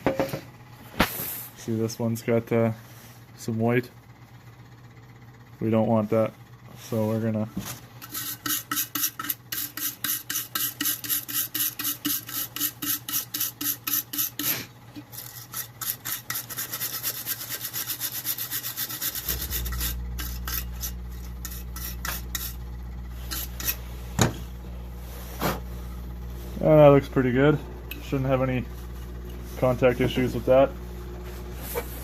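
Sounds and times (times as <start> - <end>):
steady low hum: 0.0 - 32.0
scrubbing metal terminal: 15.1 - 22.6.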